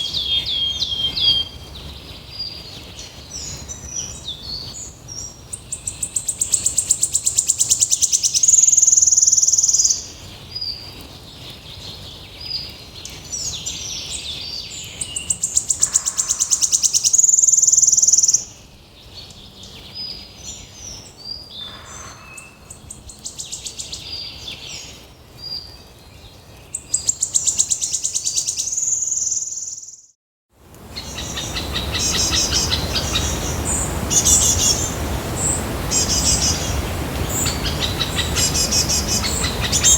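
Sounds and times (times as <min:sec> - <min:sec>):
songbird trilling: 0:00.0 - 0:01.6, 0:14.9 - 0:18.6, 0:21.6 - 0:24.6, 0:31.0 - 0:39.9
bird chattering rapidly: 0:38.0 - 0:39.9.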